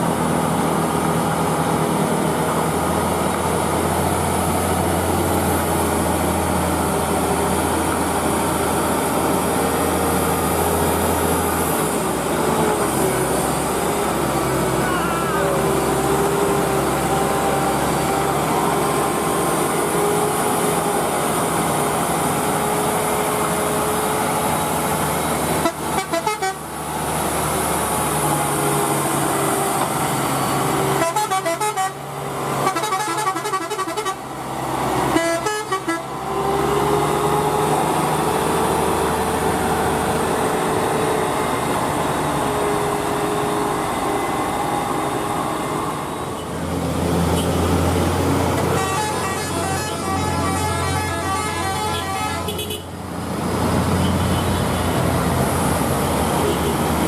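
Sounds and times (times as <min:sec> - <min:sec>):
truck engines climbing: 0:00.0 - 0:57.0
vehicle horn: 0:25.6 - 0:26.6, 0:31.0 - 0:32.0, 0:32.6 - 0:34.2, 0:35.1 - 0:36.1, 0:48.6 - 0:52.9.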